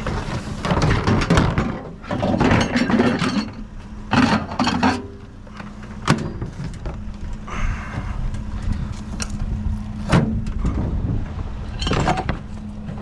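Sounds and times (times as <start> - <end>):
vehicle engine idling: 3.5 - 13.0.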